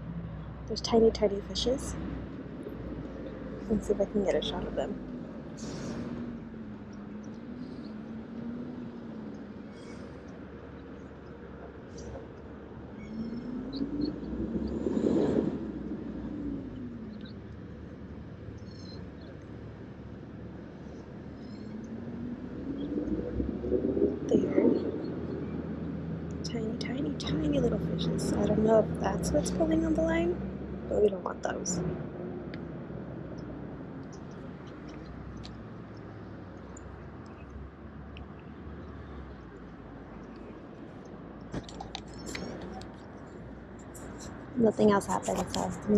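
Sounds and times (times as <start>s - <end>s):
steady low rumble: 0.0s - 45.9s
vehicle passing by: 0.0s - 45.9s
faint high chirps and ticks: 18.5s - 19.7s.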